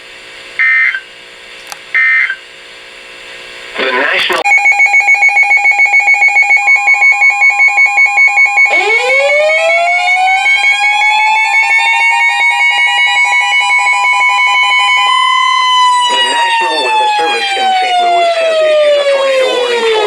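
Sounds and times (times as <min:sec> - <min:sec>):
siren winding up: 0:00.6 - 0:01.0, 0:04.3 - 0:20.0
steady high tone: 0:03.9 - 0:20.0
pulsing two-pitch electronic beeping: 0:04.4 - 0:20.0.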